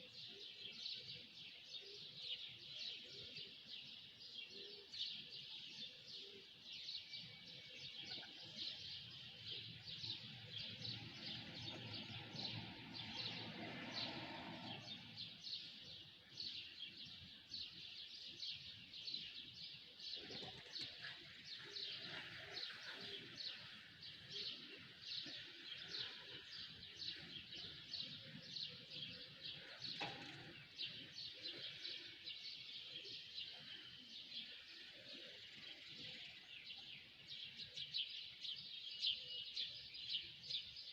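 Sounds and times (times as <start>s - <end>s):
small birds chirping: 0.0s - 40.9s.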